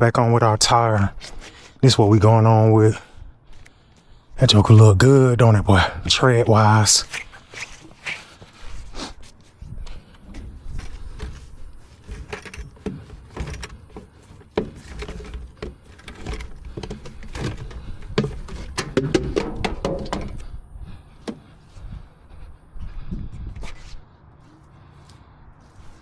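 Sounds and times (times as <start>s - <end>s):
tire being handled: 6.8s - 22.7s
tools clicking and clattering: 11.2s - 20.4s.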